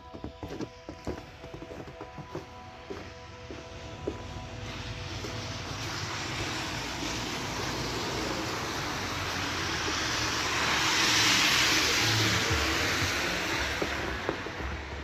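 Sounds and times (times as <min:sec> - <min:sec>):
aircraft passing overhead: 0:03.4 - 0:15.0.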